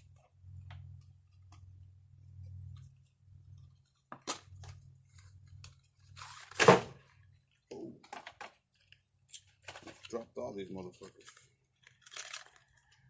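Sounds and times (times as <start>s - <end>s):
small parts clattering: 11.0s - 13.0s.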